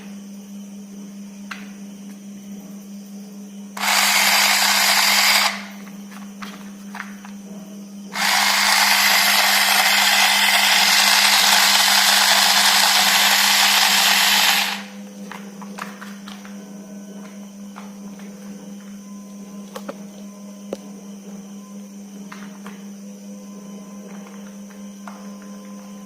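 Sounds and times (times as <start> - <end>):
toy train motor whirring: 3.8 - 5.8, 8.1 - 14.9.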